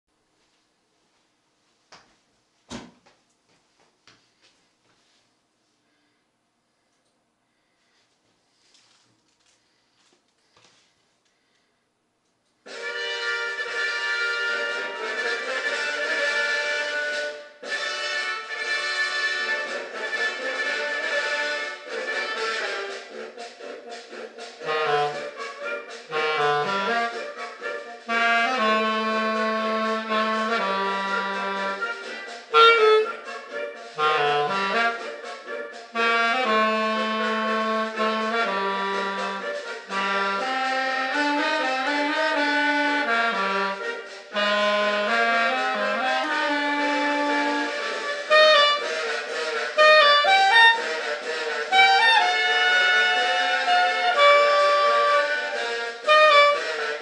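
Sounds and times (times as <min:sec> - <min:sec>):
reed instrument music: 0:12.7 - 0:57.0.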